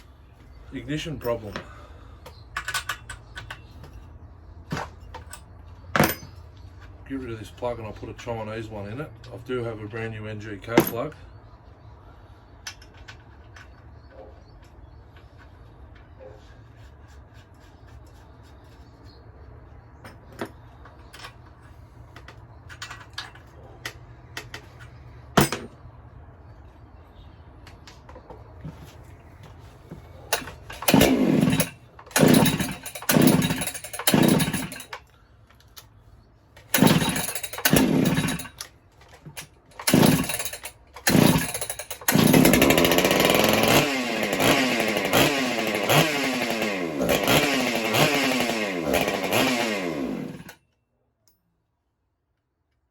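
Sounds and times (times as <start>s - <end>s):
handling clicks and knocks: 20.0s - 25.8s
chainsaw starting and running: 30.3s - 35.1s, 36.6s - 38.7s, 39.3s - 50.6s.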